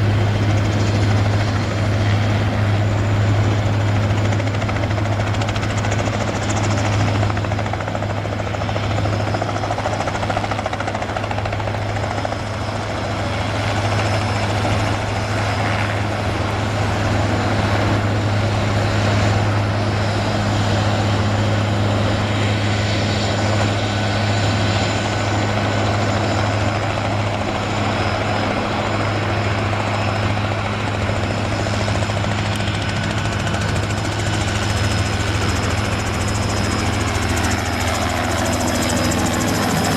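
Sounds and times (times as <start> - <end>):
helicopter engine and rotors drone: 0.0 - 39.9.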